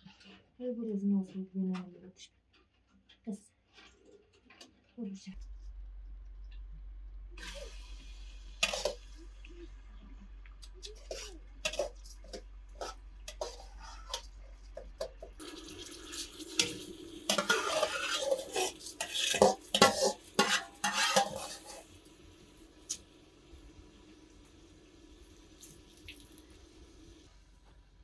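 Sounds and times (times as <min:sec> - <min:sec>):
metal pots and utensils clinking: 0:08.6 - 0:09.2, 0:10.6 - 0:22.0
metal scraping: 0:10.8 - 0:22.0.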